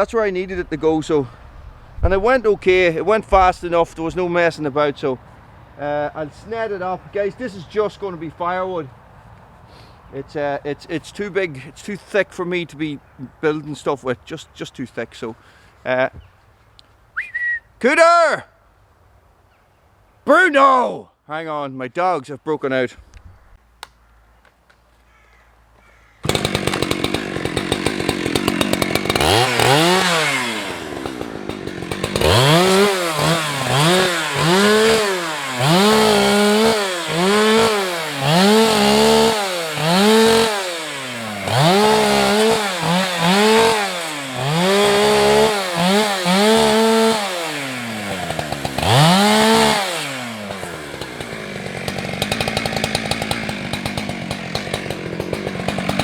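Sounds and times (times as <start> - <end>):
chainsaw revving in bursts: 26.2 - 56.0.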